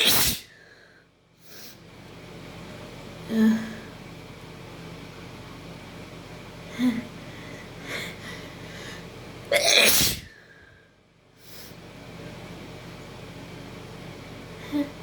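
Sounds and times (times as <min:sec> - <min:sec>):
person sneezing: 0:00.0 - 0:00.5, 0:09.5 - 0:10.4.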